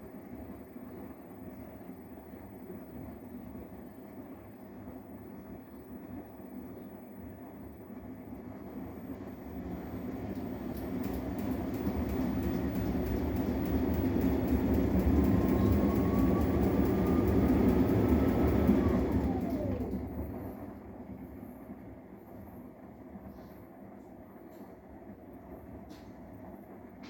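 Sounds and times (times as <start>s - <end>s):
washing machine spinning: 8.0s - 22.9s.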